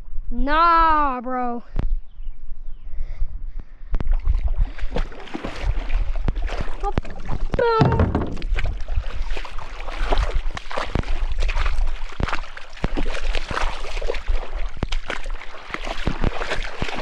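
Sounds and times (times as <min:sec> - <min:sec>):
water sloshing and splashing: 0:04.0 - 0:17.0
sharp knocks and clicks: 0:07.0 - 0:08.6.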